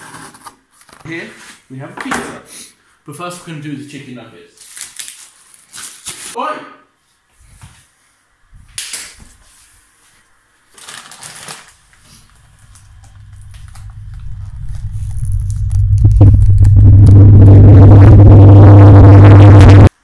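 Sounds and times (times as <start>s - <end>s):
low buzzing drone: 12.0s - 19.9s.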